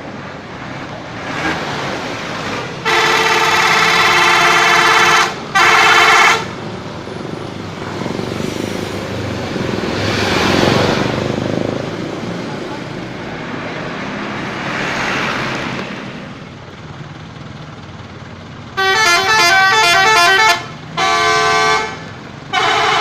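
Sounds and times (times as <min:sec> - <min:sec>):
traffic noise: 0:00.0 - 0:23.0
bus air horn blasts: 0:02.8 - 0:06.6, 0:18.8 - 0:23.0.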